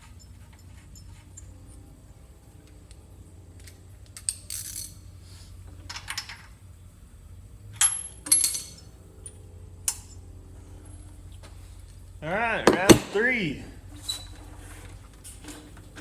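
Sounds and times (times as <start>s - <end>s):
small metal objects clinking: 3.6s - 5.1s, 7.8s - 10.2s.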